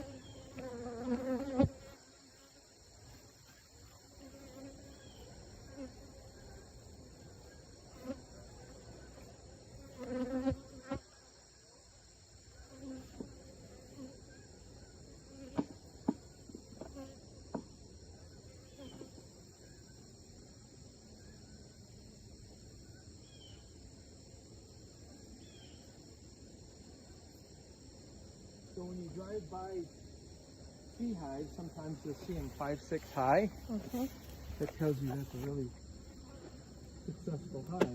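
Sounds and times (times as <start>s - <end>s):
honeybees buzzing past: 0.0s - 11.4s, 12.5s - 20.1s, 24.4s - 37.7s
high-pitched insect chorus: 0.0s - 37.9s.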